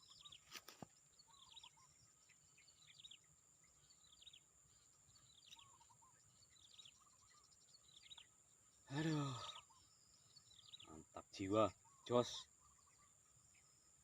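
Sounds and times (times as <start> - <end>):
faint bird calling: 0.0 - 2.2, 5.3 - 13.2
swamp background: 0.0 - 14.0.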